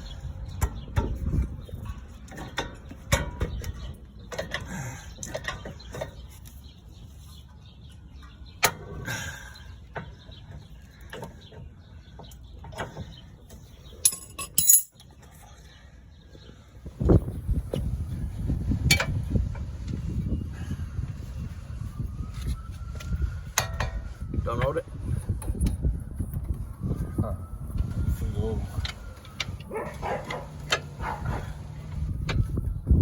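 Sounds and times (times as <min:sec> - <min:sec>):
metal tool clinks and knocks: 0:14.0 - 0:15.1.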